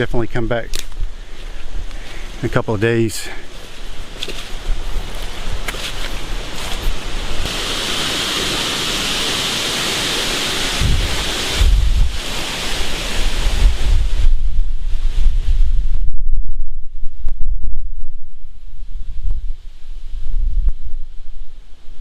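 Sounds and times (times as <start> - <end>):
storm wind rushing: 10.6 - 22.0
wind buffeting microphone: 10.7 - 22.0.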